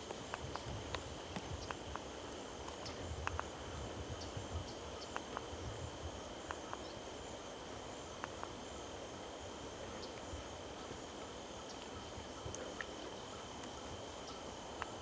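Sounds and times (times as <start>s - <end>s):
faint ticks and clicks: 0.0s - 5.6s, 6.4s - 6.9s, 8.2s - 8.6s, 11.7s - 15.0s.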